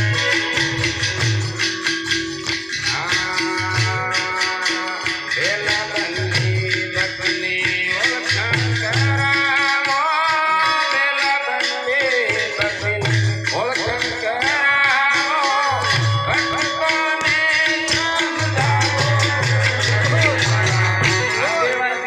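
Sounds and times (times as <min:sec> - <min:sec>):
jingling rattle percussion: 0:00.0 - 0:22.0
man singing: 0:02.7 - 0:22.0
steady pulsing beat: 0:15.9 - 0:21.7.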